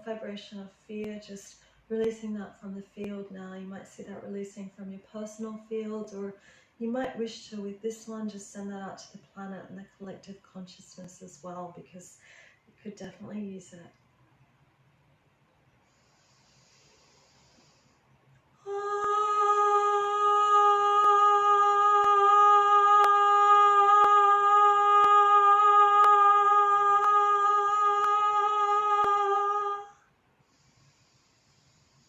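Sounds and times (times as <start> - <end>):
woman singing a held note: 18.6 - 30.1.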